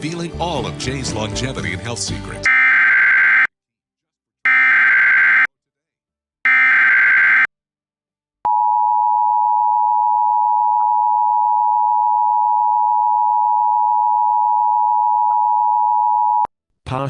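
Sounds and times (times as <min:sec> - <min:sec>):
data burst: 0:02.5 - 0:03.5, 0:04.5 - 0:05.5, 0:06.5 - 0:07.5
buzzy electronic screech: 0:04.5 - 0:05.5, 0:06.5 - 0:07.5
two-tone attention signal: 0:04.5 - 0:05.5, 0:06.5 - 0:07.5.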